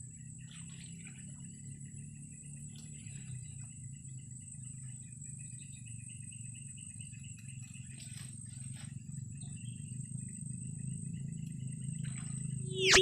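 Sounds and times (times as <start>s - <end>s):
insects droning: 0.0s - 13.0s
low steady hum: 9.1s - 13.0s
rapid repeated chirps: 12.7s - 13.0s.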